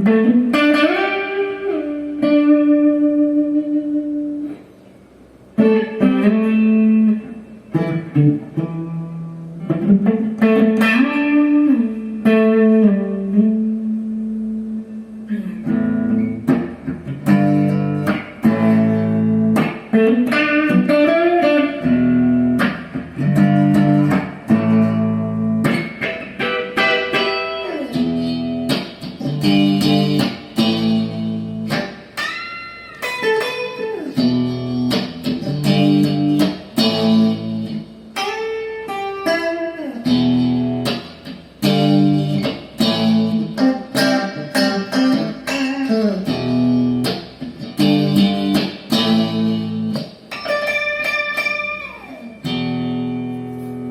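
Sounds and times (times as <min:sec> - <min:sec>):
electric guitar playing: 0:00.0 - 0:53.9.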